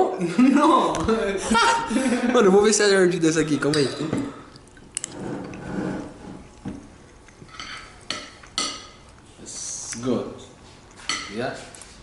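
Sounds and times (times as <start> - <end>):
cutlery clinking on plate: 7.5 - 9.1, 11.0 - 11.4.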